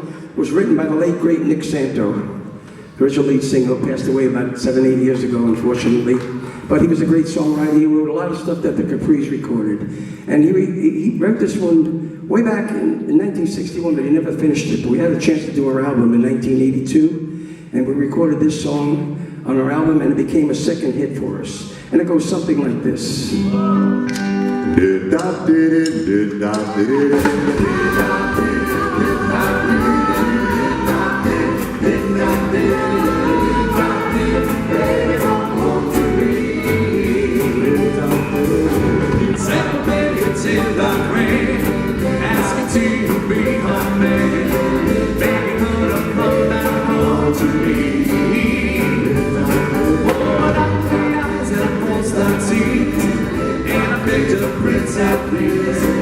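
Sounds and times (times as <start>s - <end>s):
vocal group singing in harmony: 24.6s - 56.0s
backing band with drum beat: 25.9s - 56.0s.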